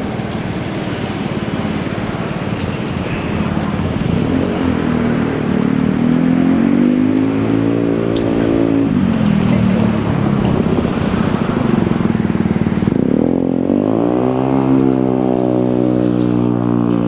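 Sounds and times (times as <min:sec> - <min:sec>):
vehicle motor running: 0:00.0 - 0:17.0.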